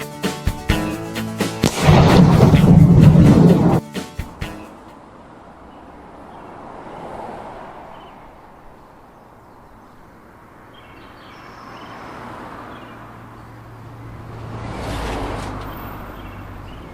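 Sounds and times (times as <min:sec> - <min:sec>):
intro music: 0:00.0 - 0:04.9
steady rushing background: 0:00.5 - 0:04.9.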